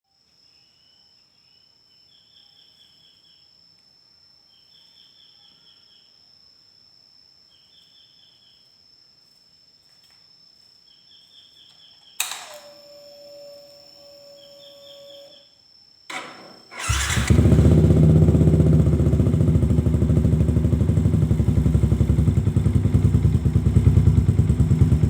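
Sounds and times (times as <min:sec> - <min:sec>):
insects chirping in trills: 0:00.1 - 0:25.0
steady ringing tone: 0:12.5 - 0:15.4.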